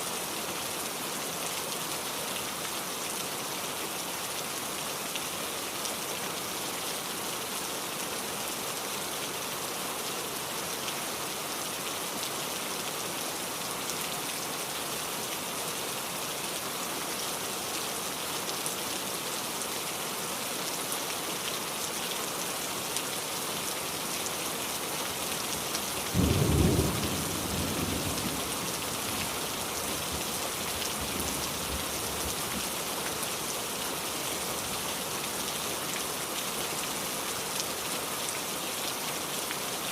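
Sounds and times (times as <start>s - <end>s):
heavy rain falling: 0.0s - 39.9s
low thunderclap rumbling: 26.2s - 28.8s.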